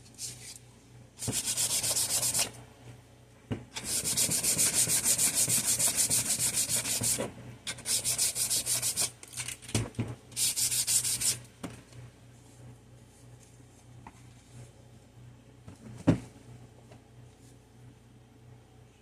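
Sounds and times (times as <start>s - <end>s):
hand sanding with sandpaper: 1.2s - 2.5s, 3.8s - 9.1s, 10.4s - 11.4s.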